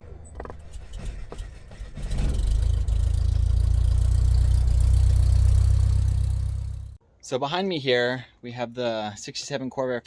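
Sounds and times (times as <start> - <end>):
car engine idling: 0.0 - 7.0.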